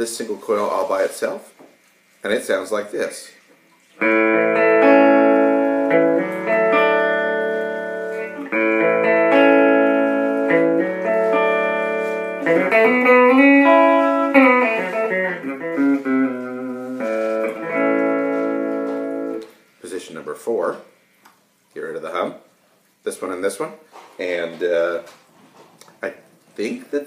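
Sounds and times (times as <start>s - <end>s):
clean electric guitar: 4.0s - 19.6s.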